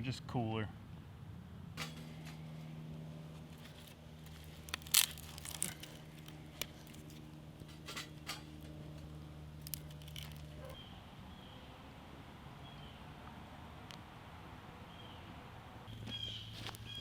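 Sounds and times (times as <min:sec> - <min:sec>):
fire crackling: 0:03.6 - 0:07.4, 0:09.6 - 0:10.8.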